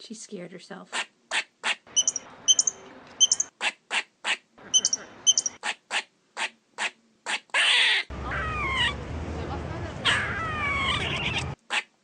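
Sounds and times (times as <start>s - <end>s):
squirrel barking: 1.0s - 9.0s.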